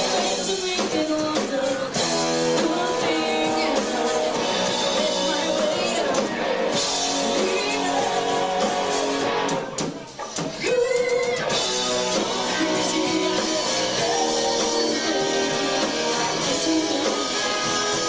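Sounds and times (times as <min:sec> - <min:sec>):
person singing: 0:00.0 - 0:09.6, 0:10.6 - 0:18.0
drum kit: 0:00.0 - 0:18.0
electric guitar: 0:00.0 - 0:18.0.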